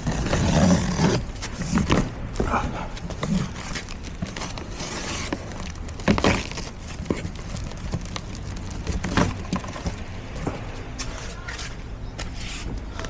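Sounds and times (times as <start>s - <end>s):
packaging knocks: 0.0s - 10.4s
wrapping rustling and crinkling: 0.0s - 11.3s.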